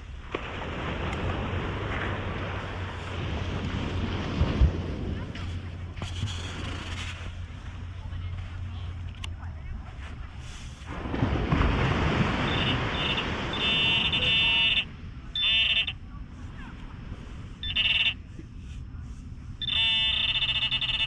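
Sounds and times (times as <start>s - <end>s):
metal detector beep: 12.5s - 16.0s, 17.6s - 18.2s, 19.6s - 21.0s.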